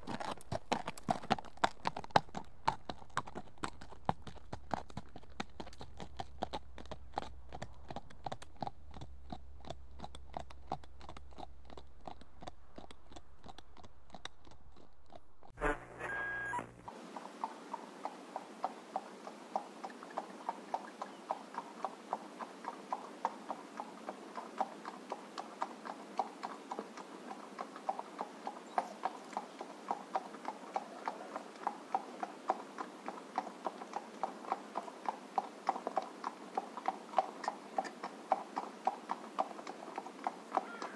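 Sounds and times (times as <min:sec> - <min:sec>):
horse hooves trotting: 0:00.0 - 0:40.9
brief tone: 0:15.6 - 0:16.8.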